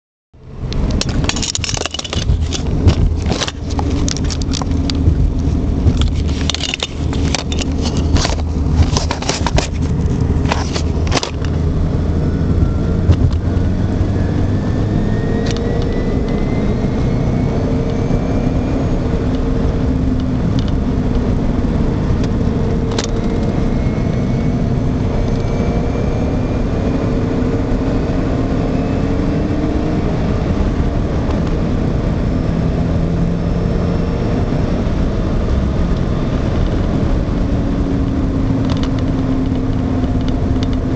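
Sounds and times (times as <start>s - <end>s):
car engine humming: 0.4s - 40.9s
sharp clicks and rattles: 0.7s - 11.9s, 12.5s - 13.6s, 19.2s - 21.4s, 22.1s - 23.6s, 38.0s - 40.9s.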